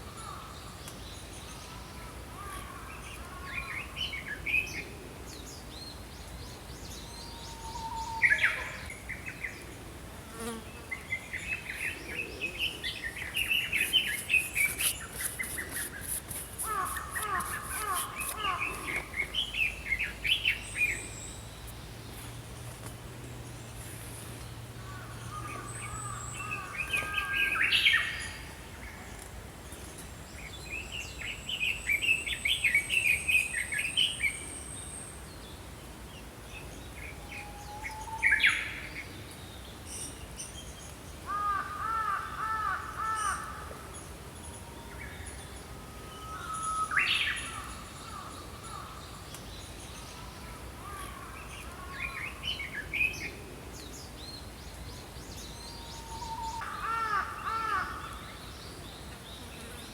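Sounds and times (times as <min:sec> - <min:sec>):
songbirds singing and chirping: 0:00.0 - 0:41.3, 0:43.0 - 0:59.9.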